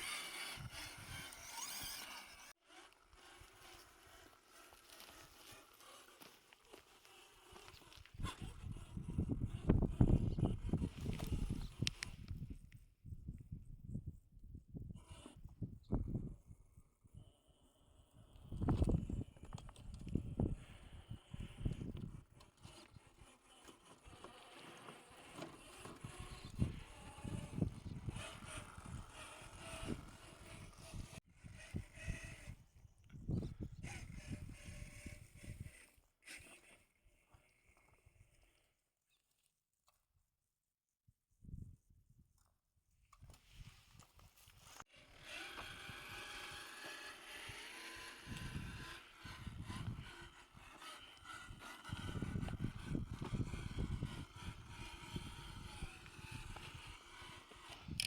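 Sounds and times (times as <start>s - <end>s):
toy truck motor running: 0.0s - 12.7s, 14.9s - 16.2s, 17.2s - 38.6s, 44.9s - 58.0s.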